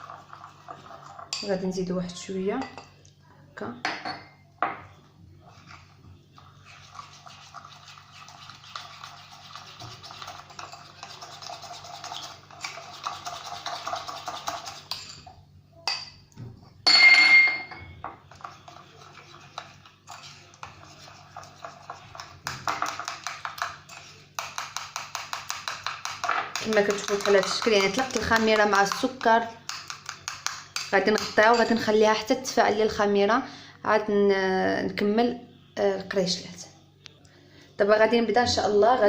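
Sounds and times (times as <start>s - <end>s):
utensil stirring in a bowl: 0.0s - 1.9s, 5.3s - 16.2s, 18.0s - 32.6s
utensil clinking against bowl: 21.6s - 31.8s.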